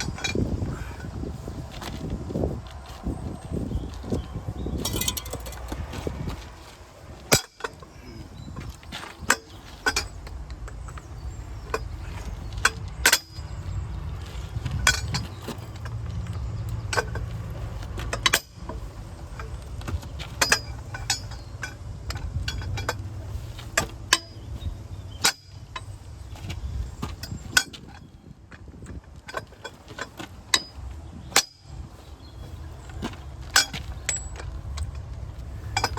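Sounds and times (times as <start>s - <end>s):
steady low rumble: 0.0s - 29.7s
metallic clinks and knocks: 3.9s - 6.4s.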